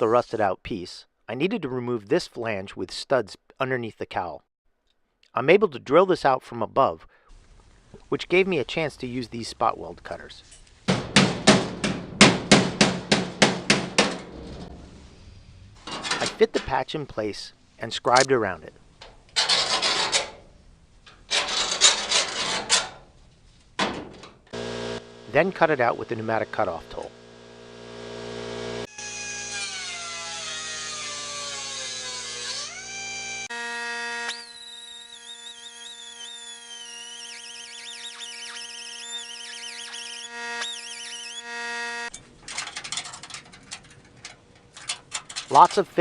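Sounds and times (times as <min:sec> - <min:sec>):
scribe scratching sheet metal: 0:19.4 - 0:20.4, 0:21.3 - 0:23.0
pneumatic cutoff tool whining: 0:26.1 - 0:33.6, 0:34.2 - 0:42.2
metal clicks and rattles: 0:42.1 - 0:45.9.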